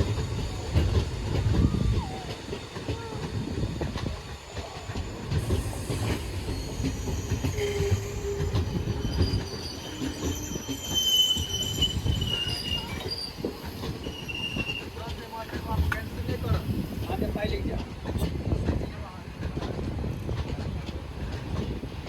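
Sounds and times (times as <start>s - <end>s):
train wheels rumbling and clattering: 0.0s - 22.0s
wheel squeal: 4.8s - 15.0s.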